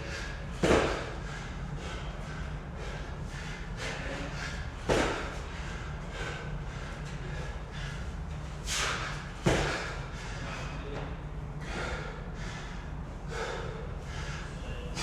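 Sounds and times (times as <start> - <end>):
hard breathing: 0.0 - 15.0
heavy thuds on gym floor: 4.8 - 5.4, 9.4 - 9.8.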